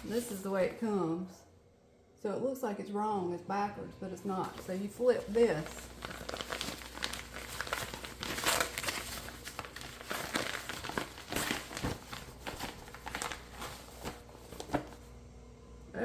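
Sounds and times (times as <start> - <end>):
bib crinkling and rustling: 0.0 - 0.7, 4.4 - 15.1.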